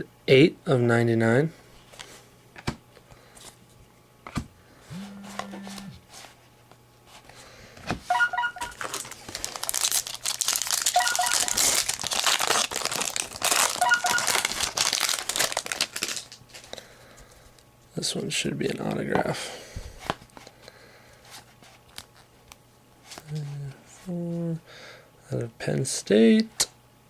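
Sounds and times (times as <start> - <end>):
foil wrapper tearing and crinkling: 8.7 - 16.8.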